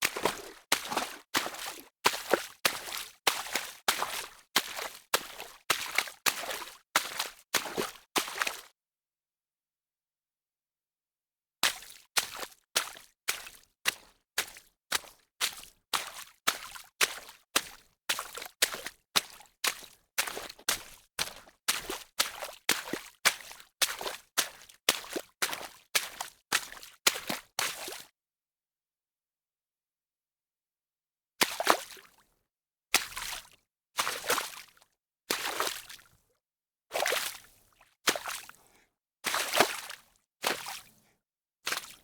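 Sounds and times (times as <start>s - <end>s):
footsteps wading through water: 0.0s - 8.7s, 11.6s - 28.0s, 31.4s - 32.2s, 33.0s - 36.2s, 36.9s - 38.6s, 39.3s - 41.0s, 41.7s - 42.0s.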